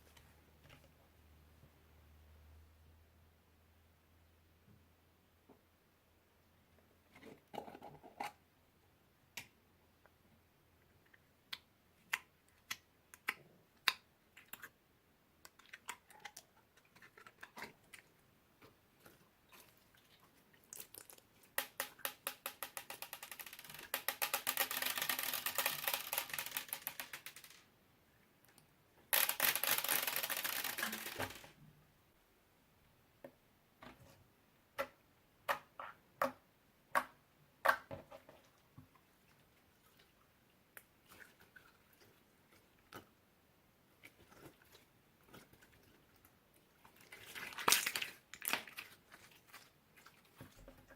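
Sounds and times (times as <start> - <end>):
slime squishing: 46.9 - 50.9.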